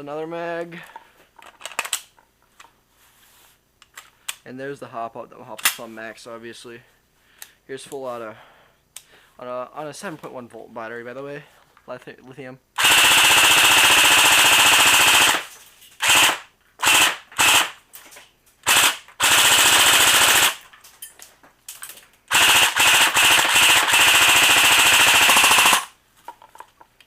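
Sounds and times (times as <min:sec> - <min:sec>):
airsoft gun firing full auto: 0:12.8 - 0:17.8, 0:18.6 - 0:20.6, 0:22.3 - 0:26.0.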